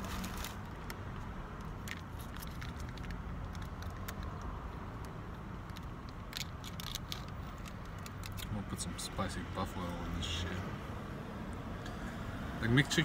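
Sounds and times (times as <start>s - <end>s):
mouth and wrapper clicks: 0.2s - 8.5s.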